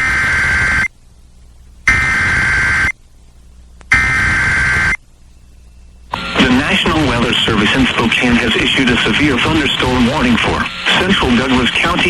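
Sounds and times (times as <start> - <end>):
harsh digital data bursts: 1.9 - 3.0, 3.9 - 5.0, 6.2 - 12.0.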